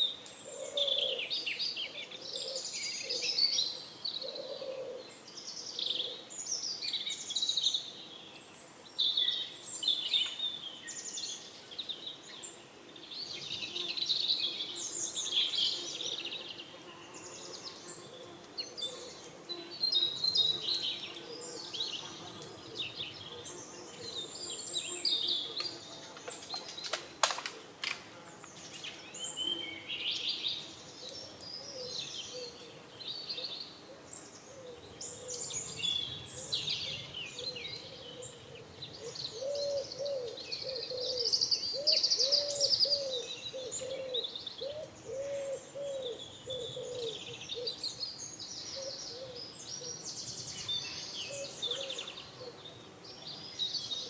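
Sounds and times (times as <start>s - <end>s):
small birds chirping and singing: 0.0s - 54.0s
pigeons cooing: 0.5s - 1.3s, 4.2s - 5.1s, 33.9s - 35.6s, 36.8s - 47.8s, 48.8s - 50.0s, 51.2s - 52.6s.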